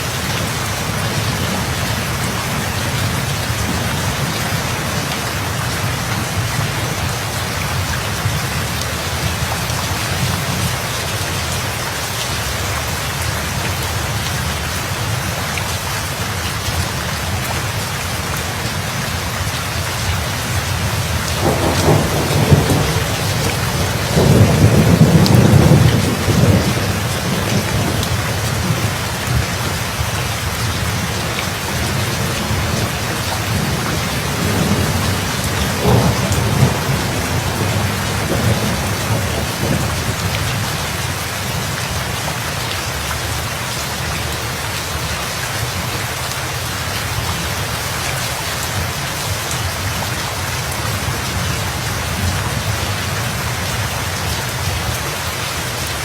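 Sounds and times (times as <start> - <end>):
heavy rain: 0.0 - 56.0
thunder rumbling: 20.1 - 41.2.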